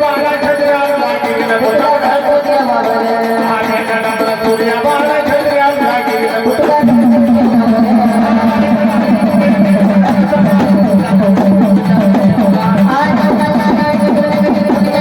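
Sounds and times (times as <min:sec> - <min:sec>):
instrumental accompaniment: 0:00.0 - 0:15.0
man singing: 0:00.0 - 0:15.0
steady percussion beat: 0:00.0 - 0:15.0.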